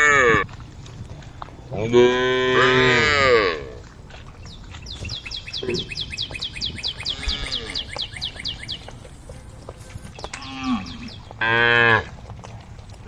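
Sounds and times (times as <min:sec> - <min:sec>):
cow mooing: 0:00.0 - 0:00.4, 0:01.8 - 0:03.8, 0:07.0 - 0:08.0, 0:10.4 - 0:12.1
distant cow moo: 0:01.8 - 0:03.8, 0:07.0 - 0:08.1
bird chirping rapidly: 0:04.4 - 0:09.1.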